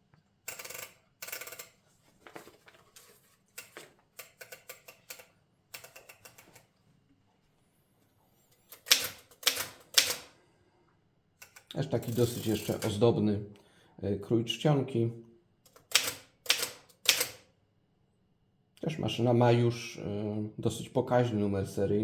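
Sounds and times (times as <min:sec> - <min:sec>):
typewriter clicking and ratcheting: 0:00.5 - 0:01.8, 0:03.6 - 0:06.6, 0:08.7 - 0:10.3, 0:11.4 - 0:13.0, 0:15.7 - 0:17.4
typewriter key strikes: 0:08.8 - 0:10.3, 0:15.7 - 0:17.4.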